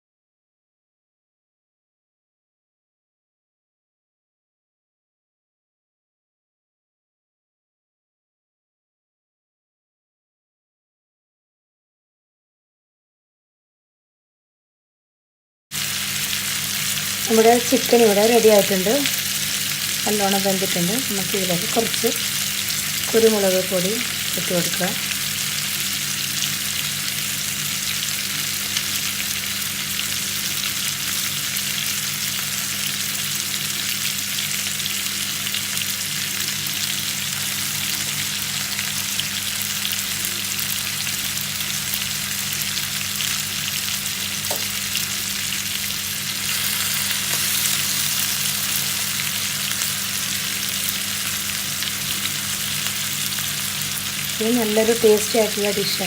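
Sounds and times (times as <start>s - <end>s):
food sizzling in a pan: 15.7s - 56.0s.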